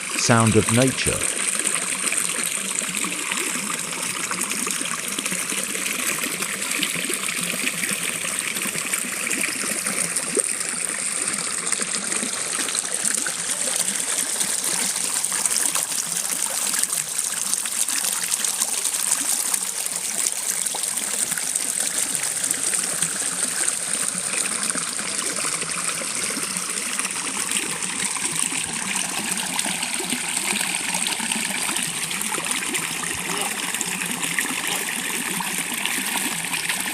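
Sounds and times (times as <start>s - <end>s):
stream flowing over rocks: 0.0s - 36.9s.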